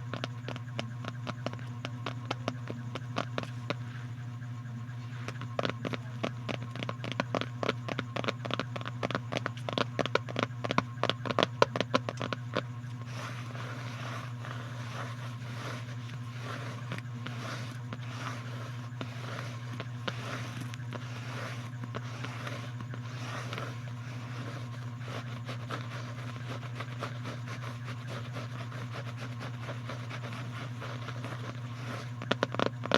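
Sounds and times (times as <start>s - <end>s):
clicking and scratching: 0.0s - 32.9s
low electrical hum: 0.0s - 32.9s
crackly rustle: 12.0s - 32.9s.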